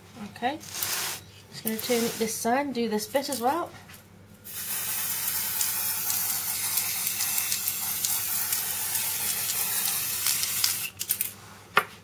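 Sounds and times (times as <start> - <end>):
aerosol spray hissing: 4.5 - 10.9.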